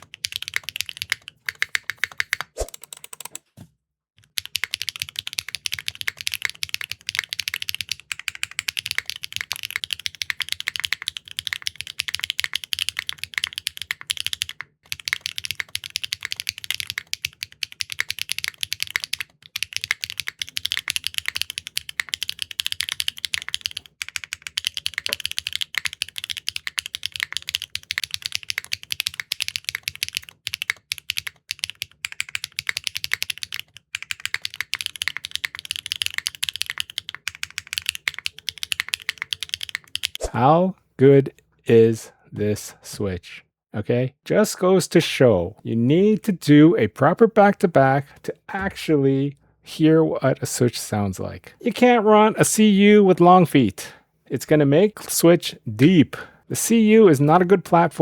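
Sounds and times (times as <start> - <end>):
fast mechanical keyboard typing: 0.0 - 3.4, 4.2 - 40.2.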